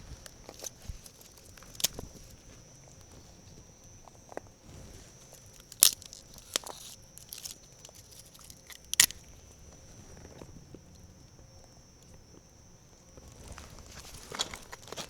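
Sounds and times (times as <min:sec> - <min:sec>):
kindling sticks crunching: 0:00.0 - 0:09.8, 0:13.2 - 0:15.0
sticks snapping: 0:05.5 - 0:09.3.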